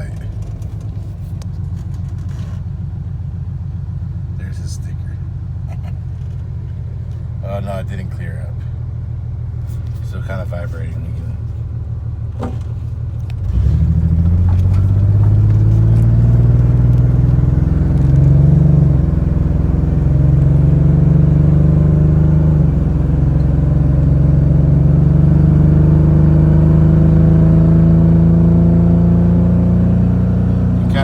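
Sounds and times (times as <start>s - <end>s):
engine idling rough: 0.0s - 31.0s
vehicle accelerating: 12.3s - 31.0s.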